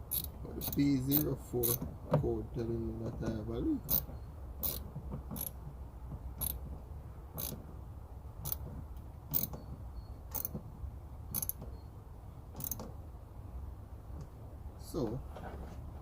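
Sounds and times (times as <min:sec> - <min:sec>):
sharp mechanical clicks: 0:11.3 - 0:11.7, 0:12.6 - 0:12.9.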